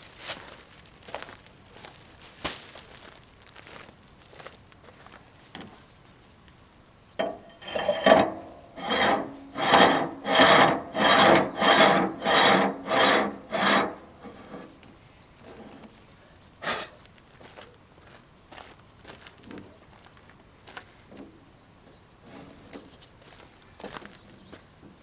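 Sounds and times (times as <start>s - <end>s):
hand tool scraping: 7.2s - 14.8s.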